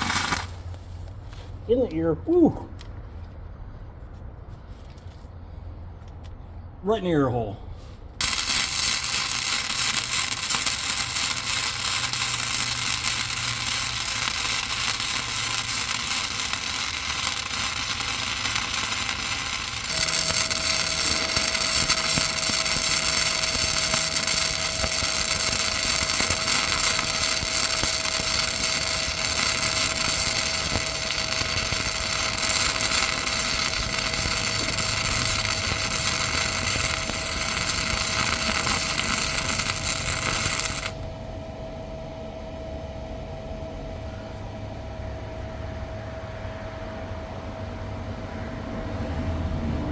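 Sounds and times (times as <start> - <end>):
welding arc crackling: 0.0 - 0.9, 8.2 - 41.2.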